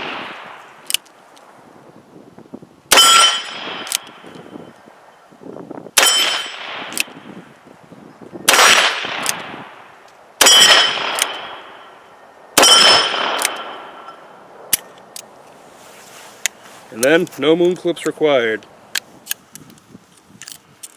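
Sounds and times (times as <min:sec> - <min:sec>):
metallic clicks: 0:13.0 - 0:15.3.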